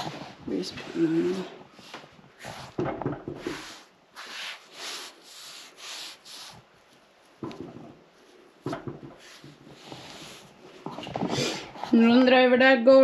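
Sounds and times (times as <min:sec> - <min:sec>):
cloth rubbing on cast iron: 0:00.0 - 0:12.2
short knocks: 0:08.6 - 0:09.6.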